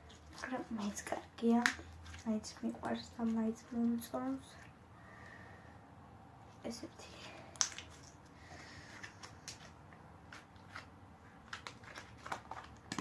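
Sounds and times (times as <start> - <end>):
sticky rustles: 7.6 - 13.0.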